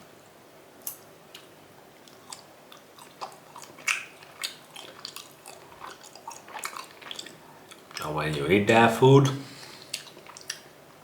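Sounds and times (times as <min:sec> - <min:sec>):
person chewing food: 0:00.8 - 0:08.5, 0:09.2 - 0:10.8.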